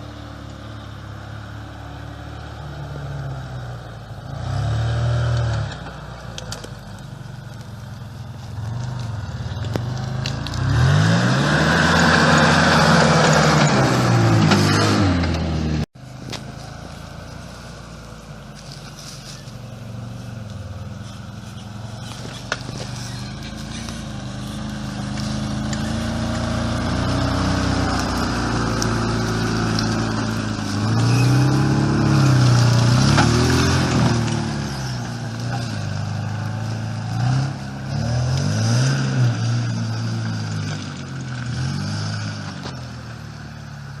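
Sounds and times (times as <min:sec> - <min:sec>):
quieter steady engine: 0:00.0 - 0:44.0
loud engine running: 0:16.5 - 0:38.8.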